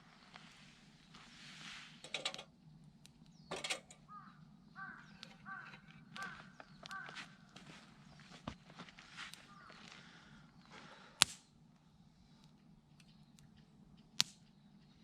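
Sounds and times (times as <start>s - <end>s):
crow cawing: 4.0s - 7.9s, 9.4s - 11.1s.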